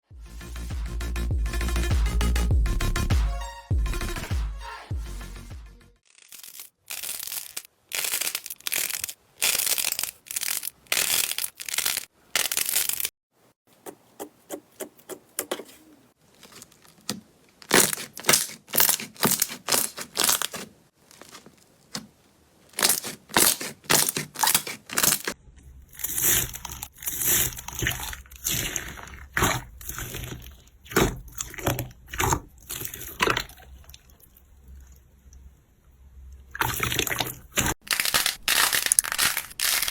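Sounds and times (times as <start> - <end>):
slime crackling and crunching: 6.0 - 13.1, 16.2 - 22.0, 22.7 - 34.4, 36.6 - 39.9.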